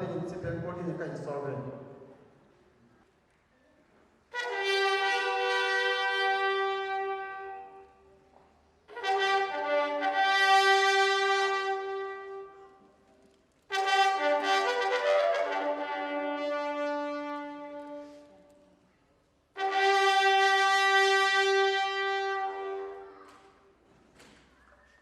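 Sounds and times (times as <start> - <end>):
brass sustained notes: 4.3 - 7.9, 8.9 - 12.6, 13.7 - 18.4, 19.6 - 23.0.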